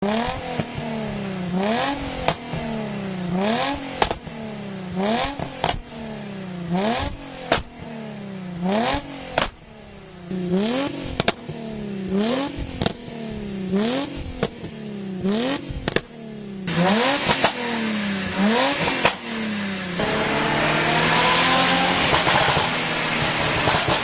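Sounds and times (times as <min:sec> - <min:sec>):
car engine revving: 0:00.0 - 0:24.0
exhaust pops and crackles: 0:01.8 - 0:04.4, 0:05.0 - 0:05.9, 0:06.9 - 0:07.8, 0:08.8 - 0:09.6, 0:10.8 - 0:13.1, 0:13.7 - 0:14.8, 0:15.7 - 0:19.3, 0:21.9 - 0:24.0.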